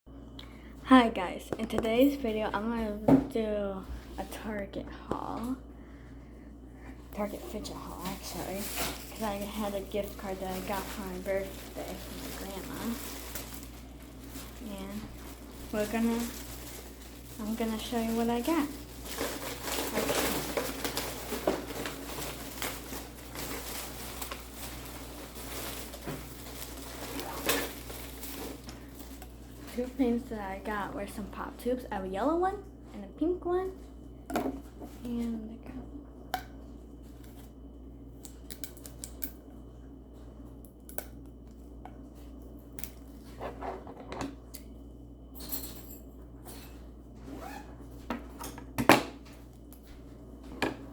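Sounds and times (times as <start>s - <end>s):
steady low hum: 0.1s - 50.9s
packaging rustling and clicks: 18.0s - 29.2s.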